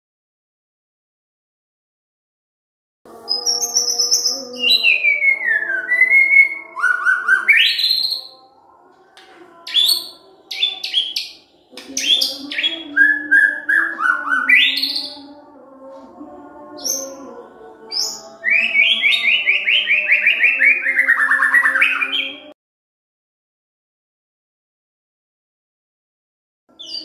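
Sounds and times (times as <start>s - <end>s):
bird singing whistled phrases: 3.3s - 8.4s, 12.0s - 15.2s, 17.9s - 22.4s, 26.8s - 27.0s.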